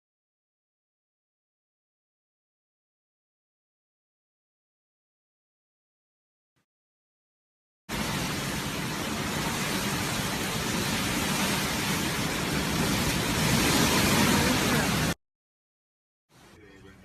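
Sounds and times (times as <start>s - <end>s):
storm wind and rain rushing: 7.9s - 15.2s.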